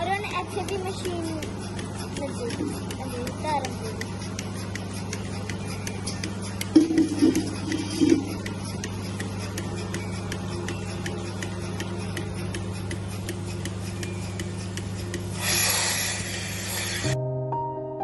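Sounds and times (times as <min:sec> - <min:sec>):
pulsators ticking: 0:00.0 - 0:17.2
vacuum system humming: 0:00.0 - 0:17.2
air hissing: 0:15.0 - 0:17.2.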